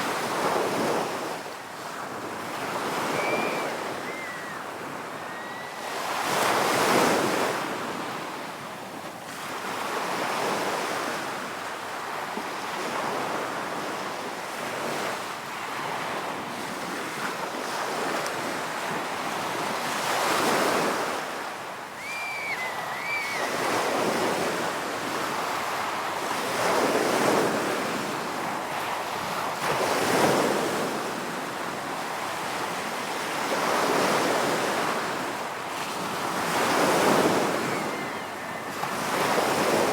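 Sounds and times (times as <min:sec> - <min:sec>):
ocean surf breaking: 0:00.0 - 0:08.2, 0:19.2 - 0:39.9
high wavering whistle-like call: 0:03.0 - 0:05.9, 0:22.0 - 0:23.6, 0:37.4 - 0:38.8.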